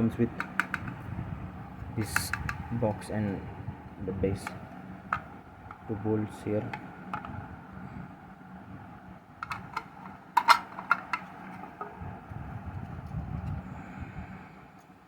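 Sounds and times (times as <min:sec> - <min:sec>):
plastic box clicks and taps: 0:00.4 - 0:01.0.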